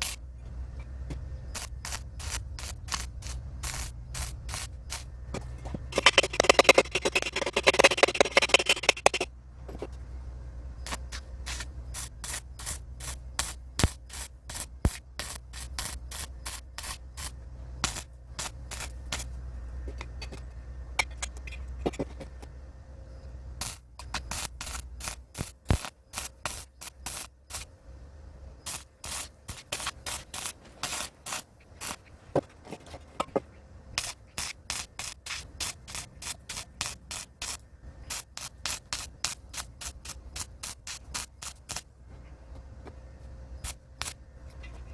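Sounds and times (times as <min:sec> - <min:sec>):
electric arc welding crackling: 0:00.0 - 0:00.2, 0:01.5 - 0:05.1, 0:05.9 - 0:09.3, 0:11.5 - 0:19.3, 0:23.6 - 0:27.7, 0:28.6 - 0:32.1, 0:34.0 - 0:41.9
steady low hum: 0:00.0 - 0:44.9.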